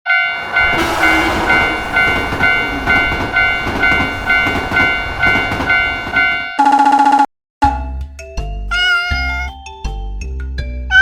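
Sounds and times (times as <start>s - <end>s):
railroad crossing bell ringing: 0.1s - 6.8s
train rumbling and clattering: 0.4s - 6.6s.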